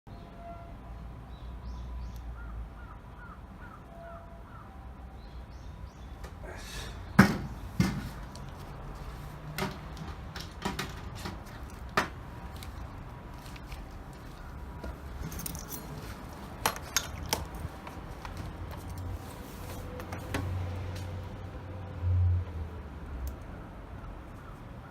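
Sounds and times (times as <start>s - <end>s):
sharp clinks and knocks: 14.8s - 18.0s.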